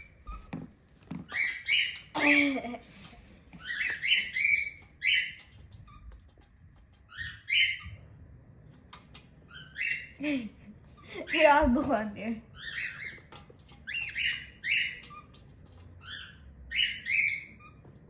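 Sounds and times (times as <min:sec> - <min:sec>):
cockatiel chirping calls: 0:01.3 - 0:02.4, 0:03.5 - 0:08.0, 0:09.0 - 0:10.2, 0:12.5 - 0:17.9.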